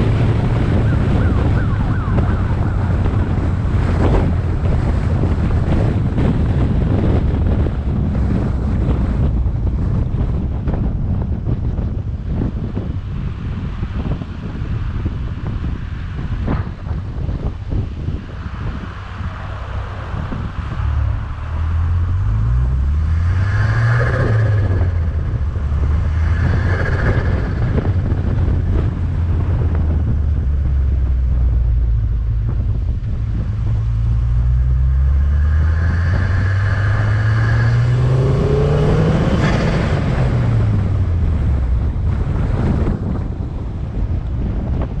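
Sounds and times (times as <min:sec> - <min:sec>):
car engine accelerating: 0:18.2 - 0:43.4
intake and turbo hiss: 0:35.2 - 0:38.7.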